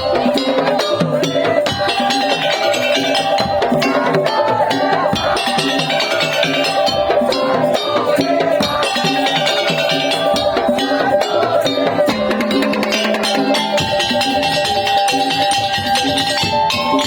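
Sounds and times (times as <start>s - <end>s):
percussion ensemble playing: 0.0s - 17.0s
repeating melodic line: 12.0s - 15.5s.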